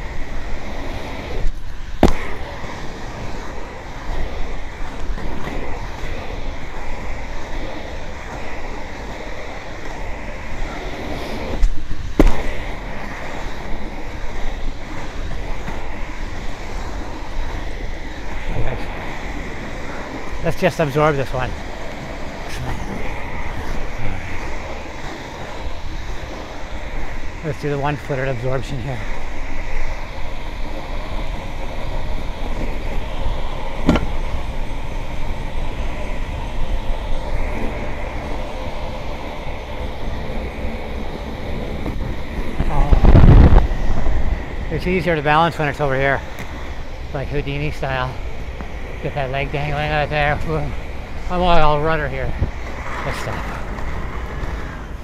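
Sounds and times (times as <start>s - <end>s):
skates rolling over pavement: 0.0s - 55.0s
wind on microphone: 0.0s - 55.0s
sharp knocks: 33.8s - 34.1s.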